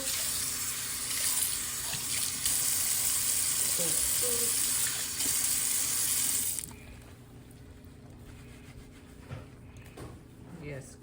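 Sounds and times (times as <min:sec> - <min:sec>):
tap water running into sink: 0:00.0 - 0:06.7.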